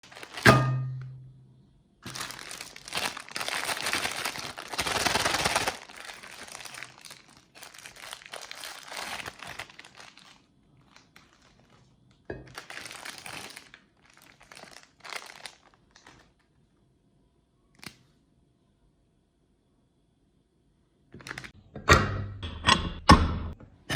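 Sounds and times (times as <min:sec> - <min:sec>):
packaging crinkling: 0:00.0 - 0:00.6, 0:02.0 - 0:16.5, 0:21.2 - 0:21.5.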